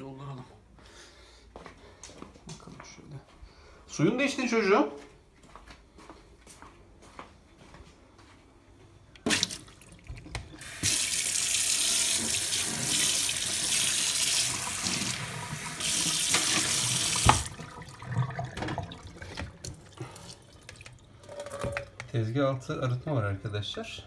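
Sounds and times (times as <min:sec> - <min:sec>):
water running into a bowl: 0:09.2 - 0:21.4.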